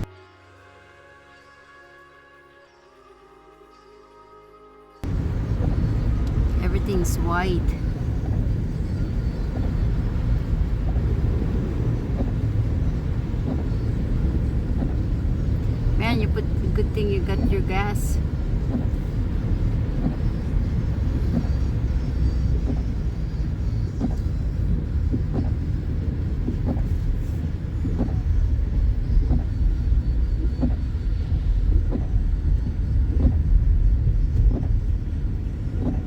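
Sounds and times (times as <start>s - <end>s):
faint regular tick: 5.0s - 6.5s, 12.1s - 12.6s
car road and engine rumble: 5.0s - 36.0s.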